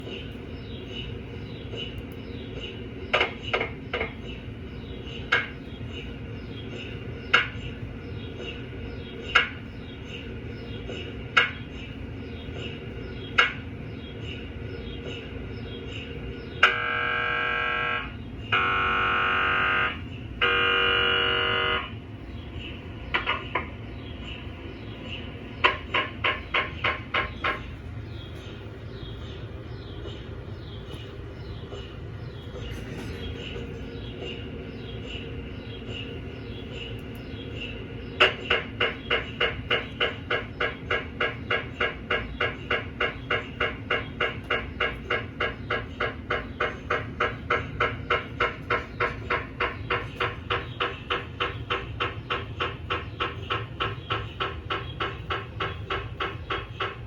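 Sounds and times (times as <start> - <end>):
mri scanner knocking and buzzing: 16.5 - 22.0, 25.5 - 27.7, 38.1 - 57.0.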